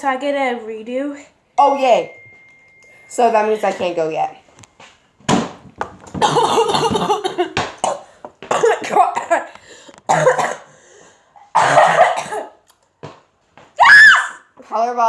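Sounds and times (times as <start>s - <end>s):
child coughing: 6.2s - 9.5s, 10.1s - 10.7s, 11.5s - 12.6s.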